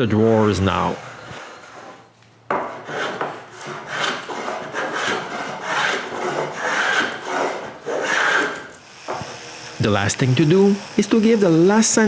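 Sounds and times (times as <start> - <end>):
hand tool rasping on wood: 2.6 - 12.0.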